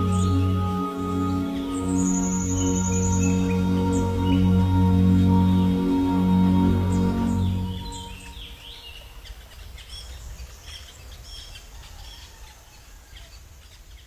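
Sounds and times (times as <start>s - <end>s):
music: 0.0s - 8.6s
low steady hum: 0.0s - 8.8s.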